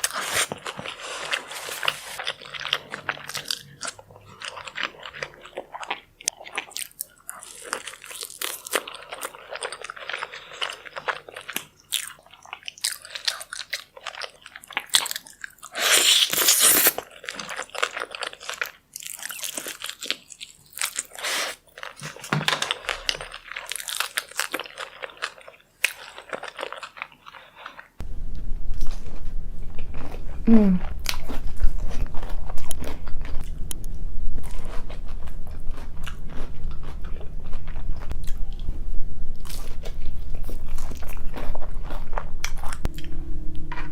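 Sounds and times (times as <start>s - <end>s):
steady low hum: 28.0s - 43.9s
crunchy chewing: 28.8s - 38.7s, 39.4s - 43.1s.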